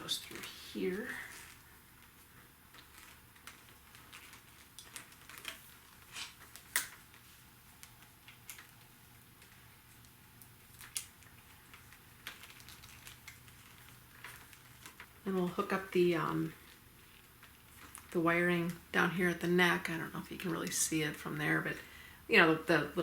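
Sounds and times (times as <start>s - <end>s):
wiring rustling: 0.0s - 21.7s
wiring connectors clicking: 7.8s - 8.8s.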